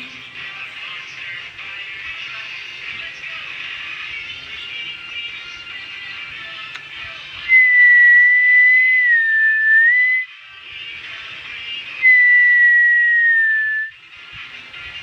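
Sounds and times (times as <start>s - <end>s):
soft background music: 0.0s - 15.0s
long whistled notes: 7.5s - 10.4s, 12.0s - 14.0s.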